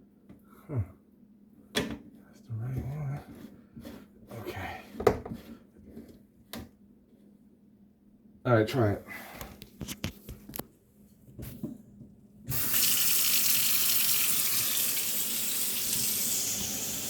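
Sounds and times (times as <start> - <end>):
water running into sink: 12.5 - 17.0.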